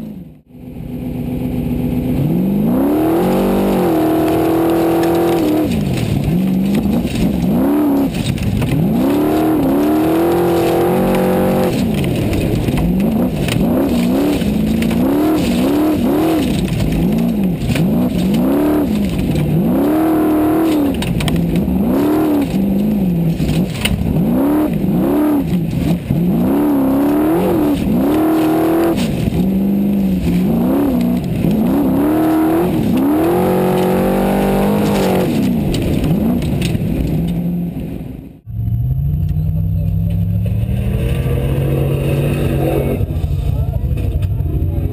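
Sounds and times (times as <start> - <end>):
race car engine revving: 0.0 - 44.9.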